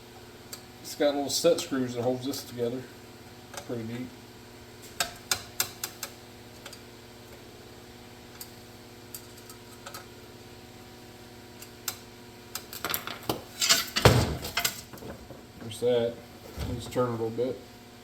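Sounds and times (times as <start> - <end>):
small metal parts clattering: 12.8 - 15.2.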